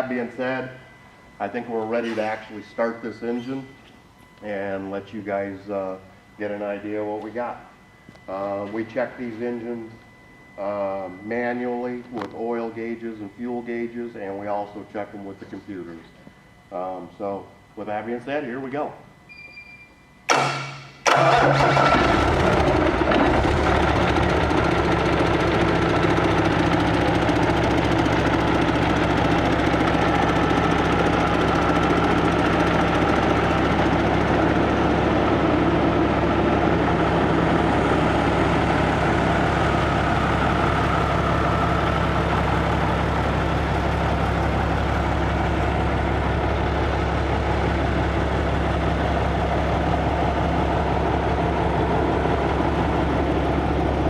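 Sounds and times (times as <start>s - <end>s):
diesel engine cranking: 20.3s - 54.0s
diesel engine idling: 21.1s - 54.0s.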